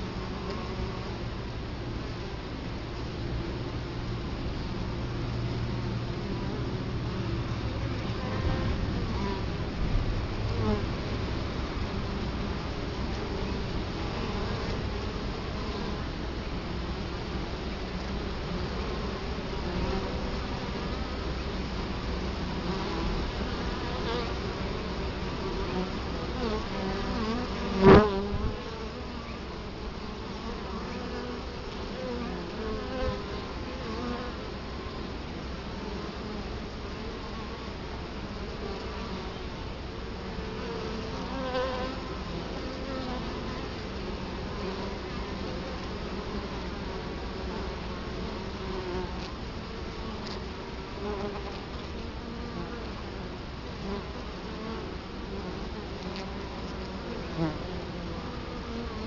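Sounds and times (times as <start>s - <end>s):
bees buzzing at hive: 0.0s - 59.0s
bee flying close past: 6.3s - 11.0s, 18.0s - 35.0s, 35.7s - 59.0s.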